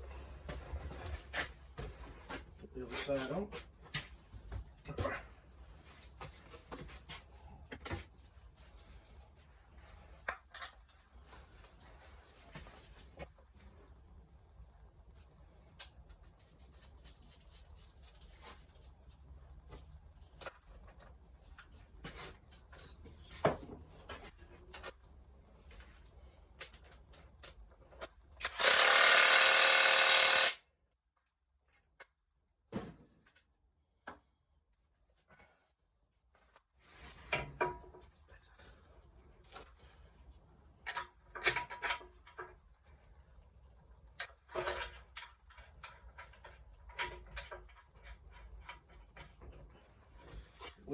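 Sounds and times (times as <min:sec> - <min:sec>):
metal parts and tools clicking: 0:26.7 - 0:30.6.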